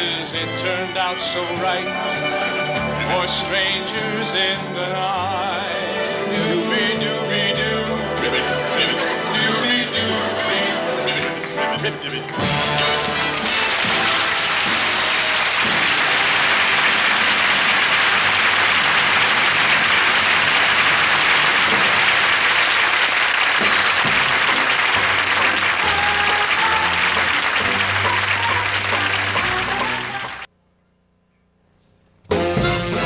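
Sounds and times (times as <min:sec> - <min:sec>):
band playoff music: 0:00.0 - 0:30.5, 0:32.3 - 0:33.0
studio audience applauding: 0:11.1 - 0:30.5.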